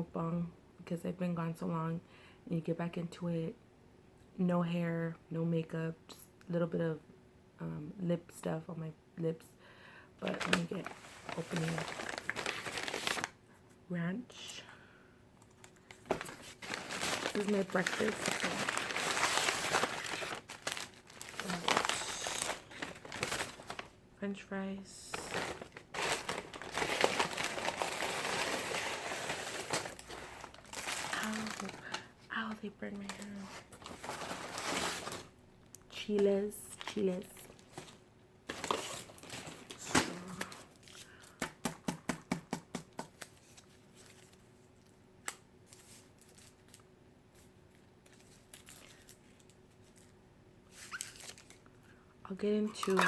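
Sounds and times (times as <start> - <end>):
food packaging crinkling: 10.2 - 13.4, 15.5 - 24.0, 25.1 - 32.2, 33.0 - 35.3, 36.7 - 41.4, 48.1 - 50.1, 50.7 - 51.7, 52.7 - 53.0.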